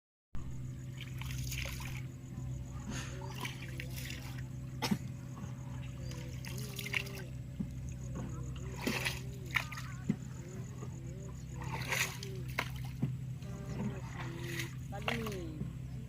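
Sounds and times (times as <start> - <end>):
steady low hum: 0.4 - 16.0
river water trickling and splashing: 0.8 - 15.7
sharp splashing stroke: 1.0 - 2.0, 8.6 - 10.0, 11.6 - 13.0.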